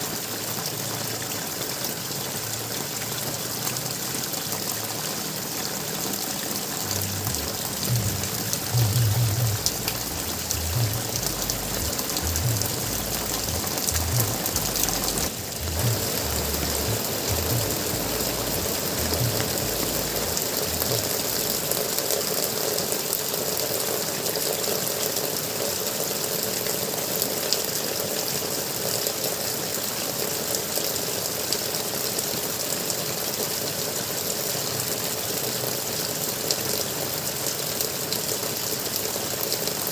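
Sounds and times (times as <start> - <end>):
water gurgling and trickling: 2.4 - 22.6
low thumps: 7.0 - 21.4.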